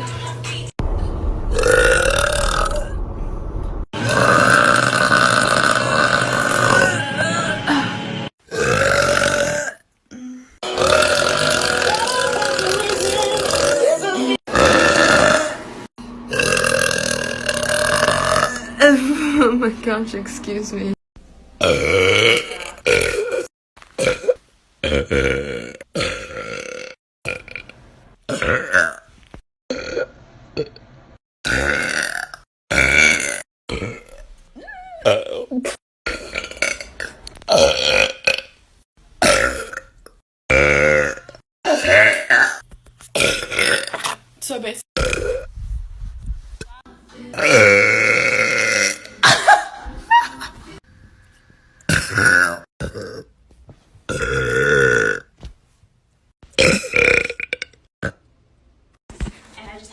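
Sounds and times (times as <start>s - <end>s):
girls burping loudly: 4.0s - 7.5s, 8.5s - 15.6s, 40.5s - 42.6s, 47.4s - 49.6s, 51.9s - 53.3s
women burping: 4.0s - 7.9s, 8.5s - 15.6s, 16.3s - 19.5s, 21.6s - 27.0s, 34.8s - 38.4s, 39.2s - 39.9s, 40.5s - 42.6s, 43.2s - 44.1s, 47.3s - 50.4s, 51.9s - 53.3s, 56.6s - 58.2s.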